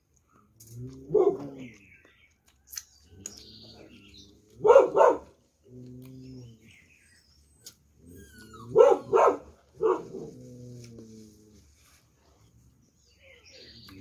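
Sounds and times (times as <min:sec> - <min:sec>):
dog barking: 0:01.1 - 0:01.5, 0:04.6 - 0:05.4, 0:08.7 - 0:10.2.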